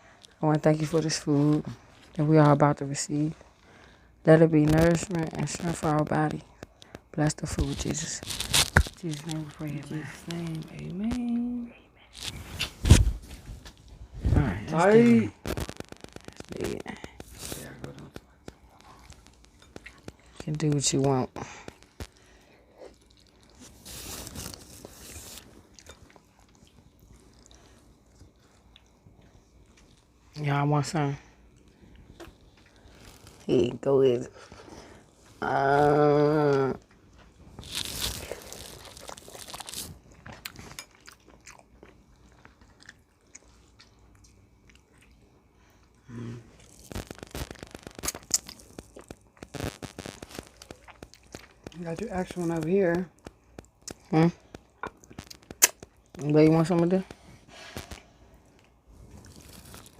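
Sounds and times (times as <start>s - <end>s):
chewing: 15.6s - 20.9s, 21.5s - 30.4s, 36.8s - 46.0s, 46.6s - 49.6s, 50.2s - 52.3s
crunchy bite into food: 37.6s - 41.9s, 46.1s - 51.8s, 59.1s - 59.9s.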